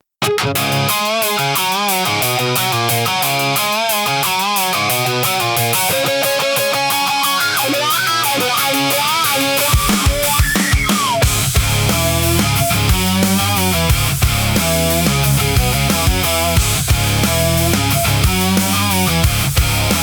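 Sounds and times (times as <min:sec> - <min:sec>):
electric guitar melody: 0:00.2 - 0:20.0
heavy low drum hits: 0:11.2 - 0:20.0.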